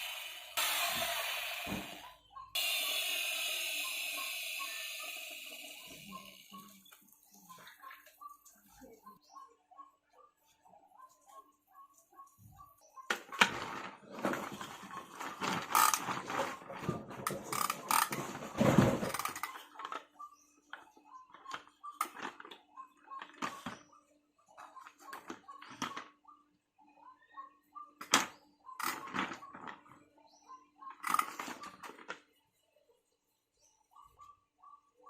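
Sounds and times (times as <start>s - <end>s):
plastic toys clattering: 13.2s - 20.1s, 21.4s - 22.6s.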